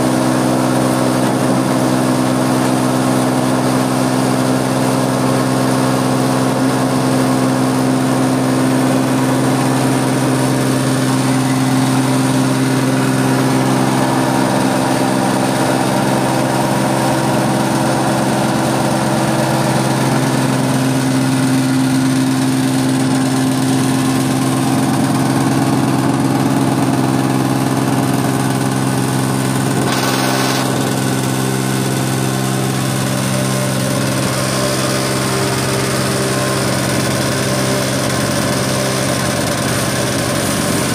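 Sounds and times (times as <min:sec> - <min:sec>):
stone crusher running: 0:00.0 - 0:40.9
electric motor hum: 0:08.7 - 0:38.2.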